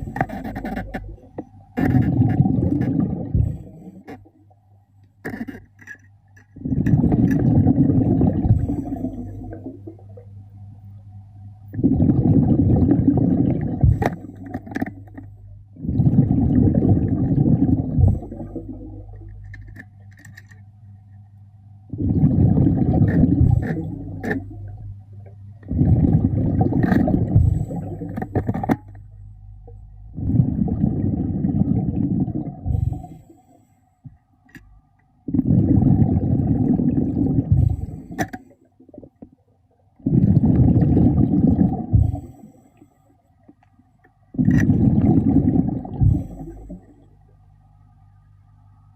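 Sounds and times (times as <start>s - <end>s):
regulator exhale bubbles underwater: 0.0s - 4.2s, 6.6s - 10.3s, 11.7s - 19.5s, 21.9s - 25.0s, 25.6s - 33.4s, 35.2s - 39.3s, 40.0s - 42.6s, 44.3s - 47.3s
steady low hum: 0.0s - 48.9s.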